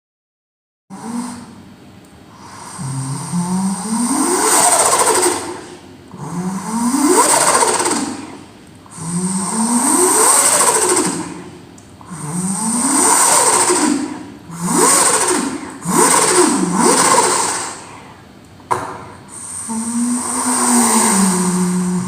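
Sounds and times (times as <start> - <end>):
person imitating engine with mouth: 0.9 - 1.7, 2.4 - 18.1, 18.7 - 22.0.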